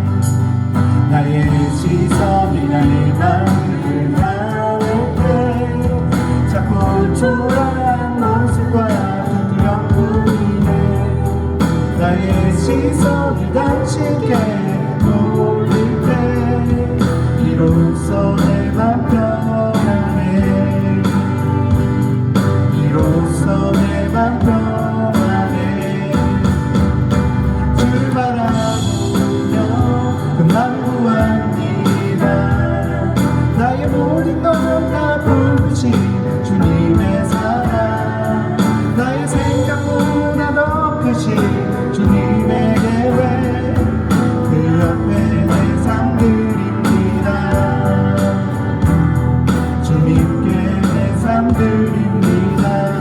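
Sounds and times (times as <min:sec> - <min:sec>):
instrumental accompaniment: 0:00.0 - 0:53.0
people singing: 0:00.0 - 0:53.0.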